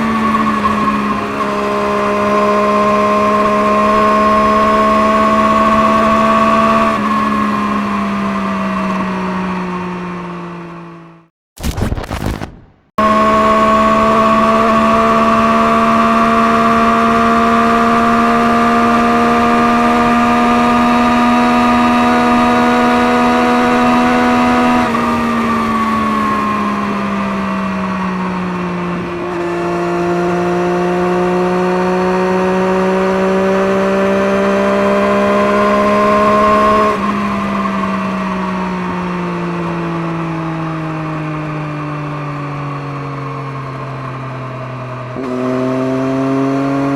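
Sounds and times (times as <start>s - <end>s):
motorcycle engine revving: 0.0s - 11.3s, 13.0s - 46.9s.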